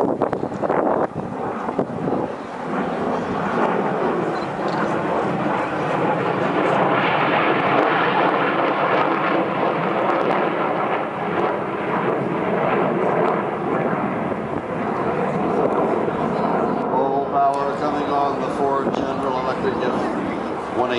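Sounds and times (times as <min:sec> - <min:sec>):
jet engines flyby: 0:00.0 - 0:20.9.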